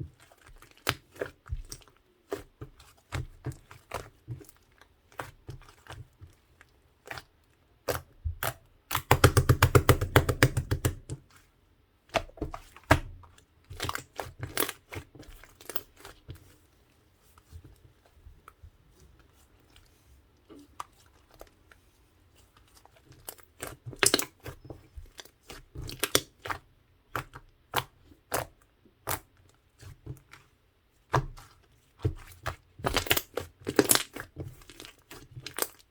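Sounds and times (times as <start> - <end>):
slime squishing wet clicks: 7.0 - 11.2, 22.6 - 30.4, 31.1 - 35.9.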